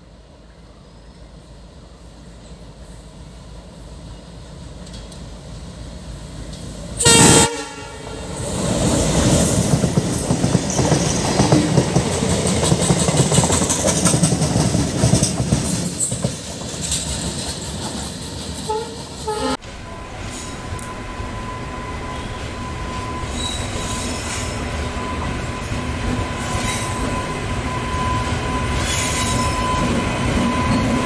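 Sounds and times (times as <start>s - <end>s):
train horn blast: 7.0s - 8.6s, 18.7s - 20.2s
train wheels clattering over rails: 8.4s - 19.3s.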